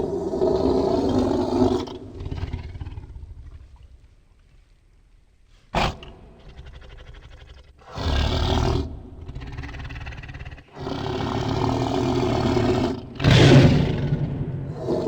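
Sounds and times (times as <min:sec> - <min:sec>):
tiger roaring: 0:00.0 - 0:03.7, 0:05.8 - 0:15.0
rumbling growl: 0:05.8 - 0:15.0.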